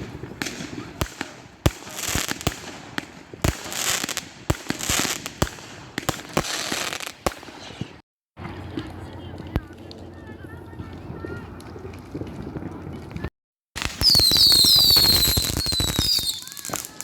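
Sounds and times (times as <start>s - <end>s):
fireworks bangs and crackles: 0.0s - 17.0s
fireworks hiss: 13.8s - 17.0s.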